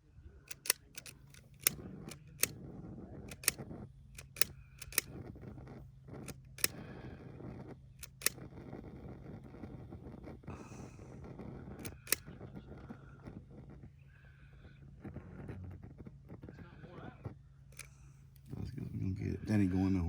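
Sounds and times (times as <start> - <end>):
lighter igniter clicking: 0.5 - 2.6, 3.3 - 9.0, 9.6 - 12.9.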